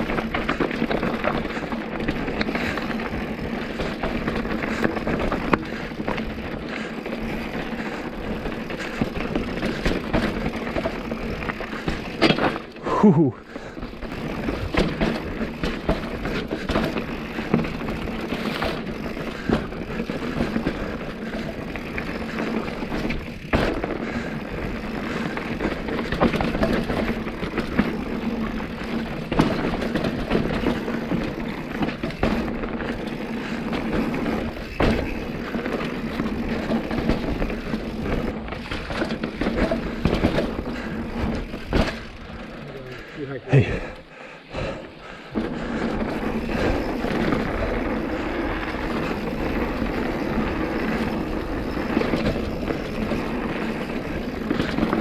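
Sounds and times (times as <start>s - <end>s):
bike tyres rolling and rattling: 0.0s - 55.0s
bike knocking over bumps: 7.6s - 12.7s, 13.8s - 42.5s.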